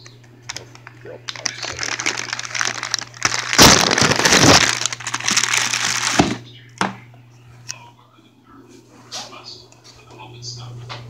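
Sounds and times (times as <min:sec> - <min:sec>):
crackling and rustling handling: 0:00.0 - 0:07.8.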